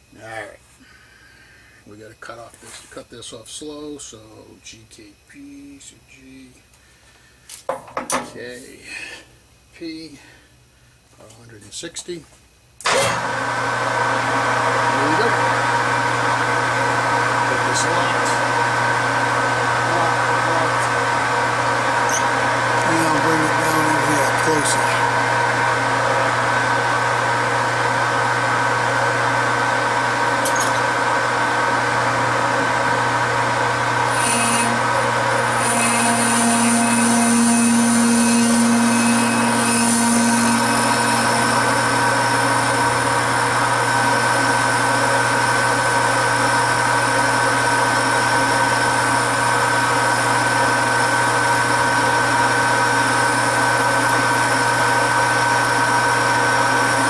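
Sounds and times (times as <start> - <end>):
lathe whine and hum: 12.8 - 57.0
cutting tool squeal: 22.0 - 25.2, 34.1 - 43.2, 47.8 - 57.0.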